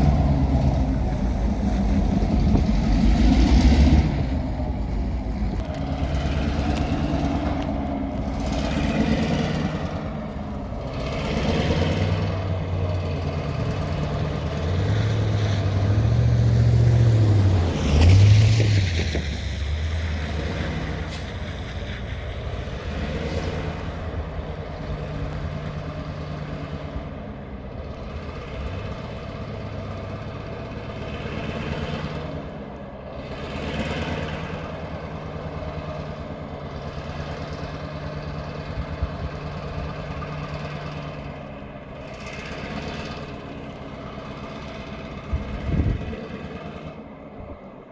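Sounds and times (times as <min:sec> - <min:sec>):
vehicle engine running: 0:00.0 - 0:47.9.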